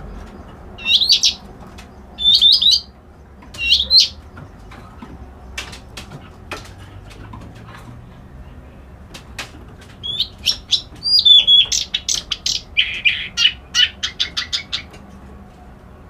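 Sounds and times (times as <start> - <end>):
songbird singing: 0.0 - 16.0.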